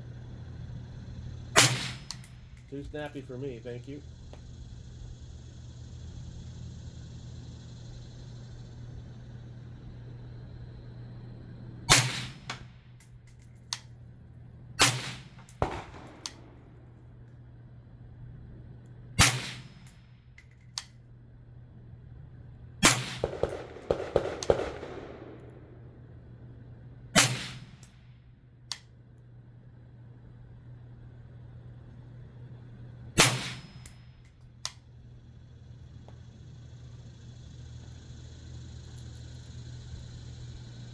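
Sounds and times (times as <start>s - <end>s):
rifle shots: 1.6s - 3.1s, 11.9s - 12.6s, 14.8s - 16.9s, 19.2s - 19.9s, 22.8s - 25.8s, 27.2s - 27.9s, 33.2s - 34.0s.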